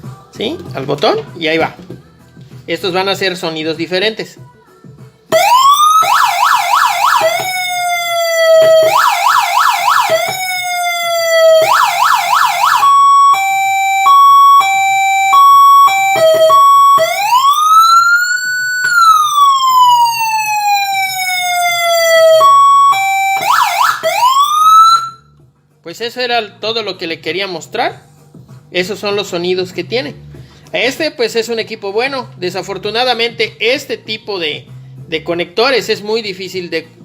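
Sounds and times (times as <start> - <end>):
electronic siren yelp and wail: 5.3 - 25.3.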